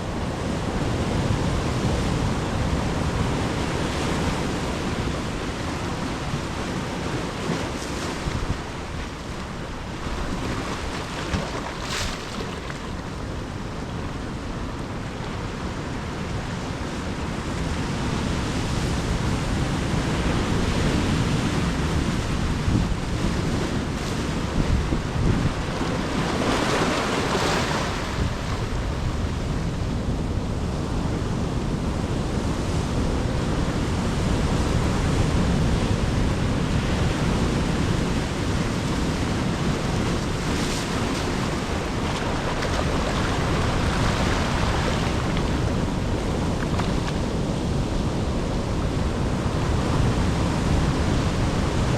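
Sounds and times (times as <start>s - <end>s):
waves breaking: 0.0s - 15.5s, 22.4s - 30.4s, 34.2s - 51.9s
ocean surf washing ashore: 0.0s - 51.9s.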